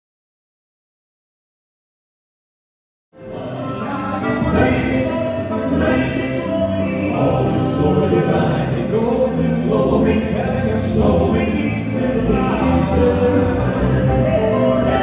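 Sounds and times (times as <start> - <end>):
gospel choir singing: 3.2 - 15.0.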